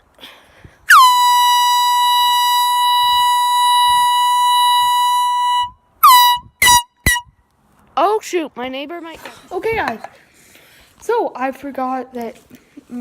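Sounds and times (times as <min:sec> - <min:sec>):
canned air horn blasting: 0:00.9 - 0:07.2.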